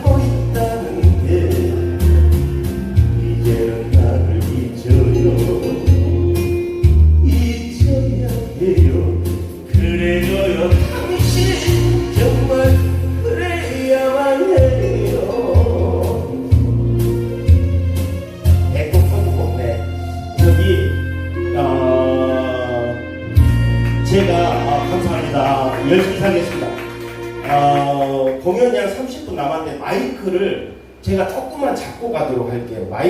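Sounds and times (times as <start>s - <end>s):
person singing: 0.0s - 6.2s, 7.2s - 16.6s, 21.5s - 23.1s
band with heavy bass beat: 0.0s - 13.4s, 14.6s - 21.2s, 23.3s - 28.0s.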